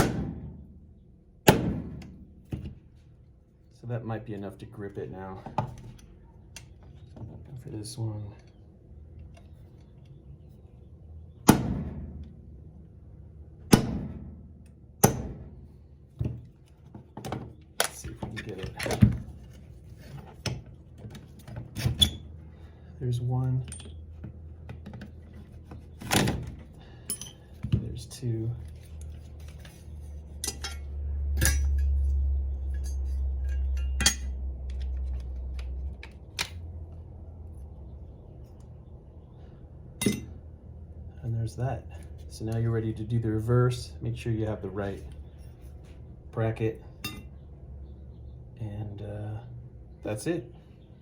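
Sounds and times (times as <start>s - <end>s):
hammer striking metal punch: 0.0s - 0.6s, 1.4s - 2.2s, 11.4s - 12.3s, 13.7s - 14.4s, 15.0s - 15.6s
low steady rumble: 0.0s - 51.0s
metal parts and tools clinking: 16.2s - 22.3s, 23.5s - 36.6s, 40.0s - 40.4s, 47.0s - 47.3s.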